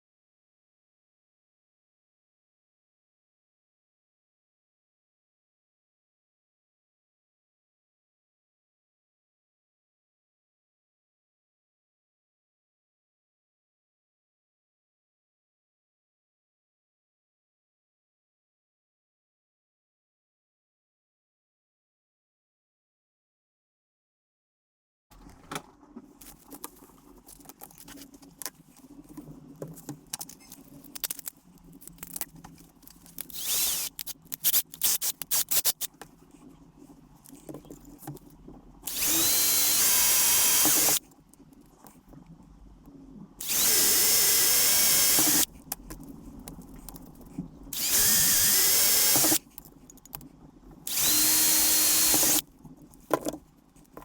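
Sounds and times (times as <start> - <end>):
small clicks and handling rattles: 26.2 - 36.2
handheld power tool running: 33.3 - 35.8, 38.9 - 41.0, 43.4 - 45.5, 47.8 - 49.4, 50.9 - 52.4.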